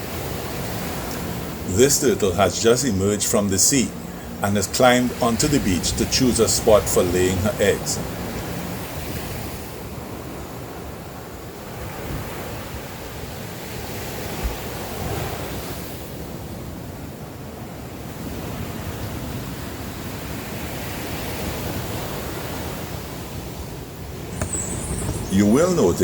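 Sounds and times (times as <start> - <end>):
sea surf breaking: 0.0 - 16.1, 24.1 - 26.0.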